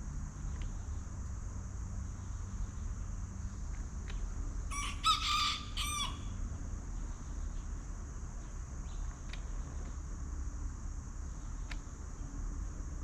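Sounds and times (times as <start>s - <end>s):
steady high-pitched hiss: 0.0s - 13.0s
rooster crowing: 4.7s - 6.4s.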